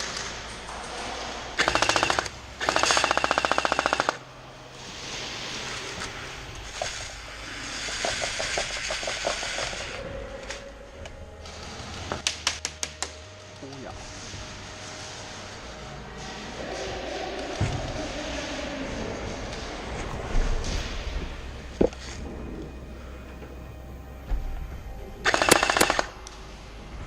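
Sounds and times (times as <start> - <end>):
airsoft machine gun bursts: 1.6 - 4.2, 25.2 - 26.1
sharp cracks: 1.6 - 4.3.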